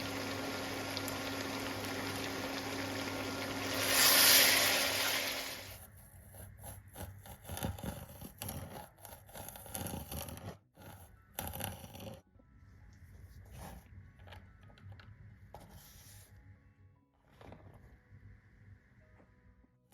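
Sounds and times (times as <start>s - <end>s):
meat sizzling in oil: 0.0s - 5.8s
utensil scraping a pan: 3.7s - 12.2s.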